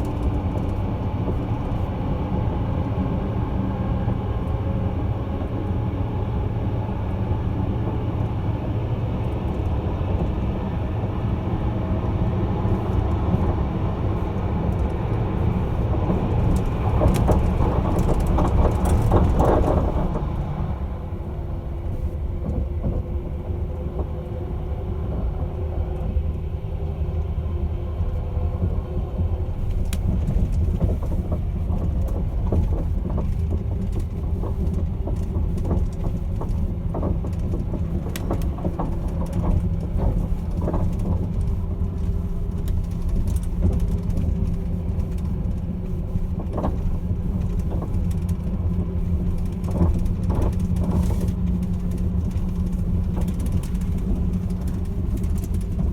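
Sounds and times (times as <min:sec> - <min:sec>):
train rumbling: 0:00.0 - 0:55.9
clicks and rattles: 0:15.8 - 0:20.3, 0:29.6 - 0:55.9.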